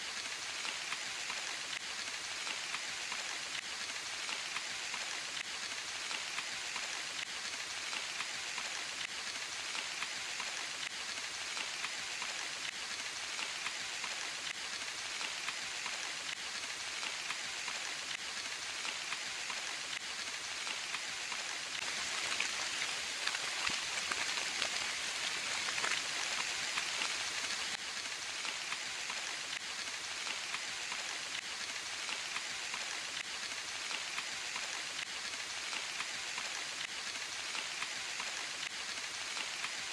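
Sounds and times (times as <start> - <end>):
rain pattering in forest: 0.0 - 39.9.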